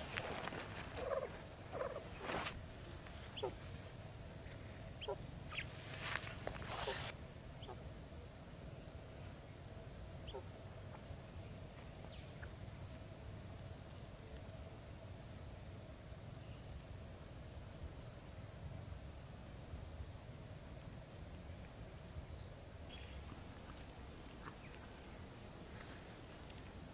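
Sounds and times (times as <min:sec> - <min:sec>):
birds chirping: 0:00.0 - 0:13.4, 0:20.7 - 0:26.9.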